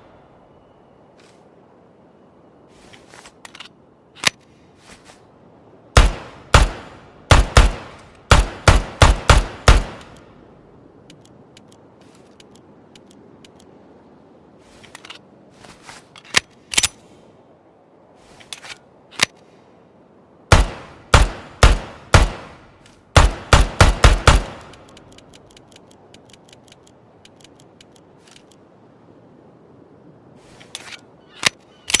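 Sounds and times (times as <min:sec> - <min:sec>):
pistol shots: 0:06.0 - 0:10.1, 0:20.5 - 0:22.6, 0:23.2 - 0:24.7
faint clicks: 0:11.0 - 0:13.8, 0:24.6 - 0:28.7.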